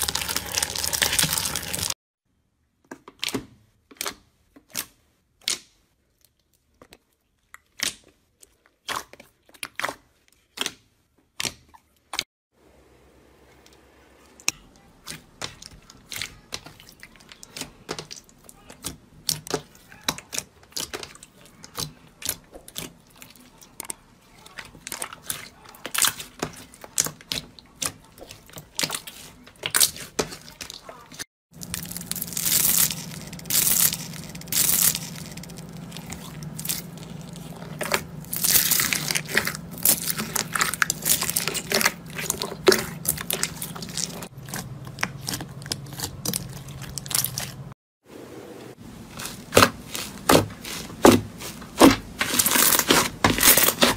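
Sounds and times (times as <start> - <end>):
crunchy slime crackling: 0.0 - 2.0, 14.3 - 47.8, 48.9 - 53.9
low hum: 31.6 - 45.1.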